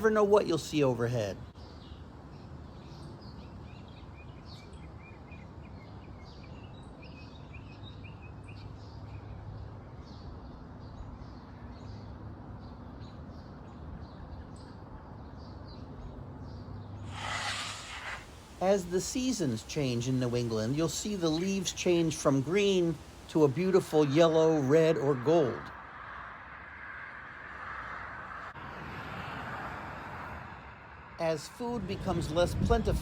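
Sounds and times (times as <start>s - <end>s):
small birds chirping: 0.0s - 25.7s
low outdoor background hum: 0.0s - 33.0s
rush of noise: 17.0s - 19.6s.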